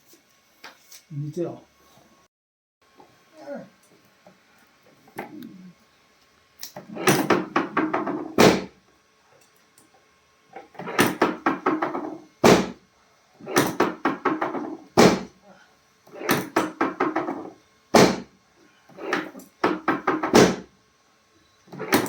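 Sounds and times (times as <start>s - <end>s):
dull thumps on a body: 12.4s - 12.8s, 15.0s - 15.3s, 18.0s - 18.3s, 20.2s - 20.6s.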